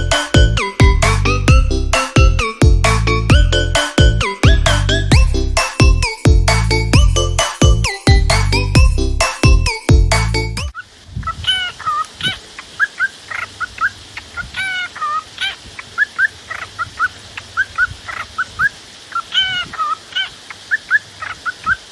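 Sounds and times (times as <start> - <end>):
music: 0.0 - 10.7
birds chirping and squawking: 10.7 - 21.9.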